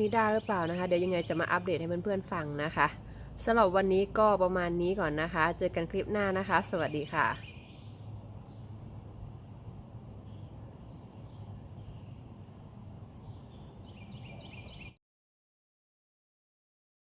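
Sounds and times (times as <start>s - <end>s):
bird chirps: 6.7s - 12.6s, 13.2s - 15.0s.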